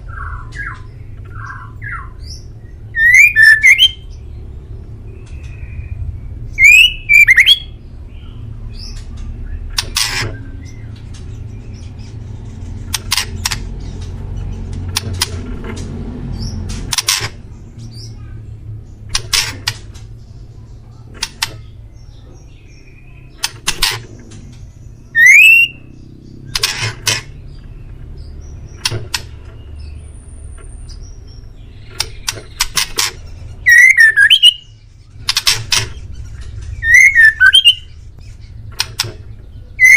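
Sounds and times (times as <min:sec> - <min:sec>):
low steady rumble: 0:00.0 - 0:33.7, 0:34.5 - 0:39.9
bird upward-sweeping whistles: 0:03.0 - 0:04.0, 0:06.6 - 0:07.7, 0:25.2 - 0:25.8, 0:33.7 - 0:34.6, 0:36.8 - 0:37.9.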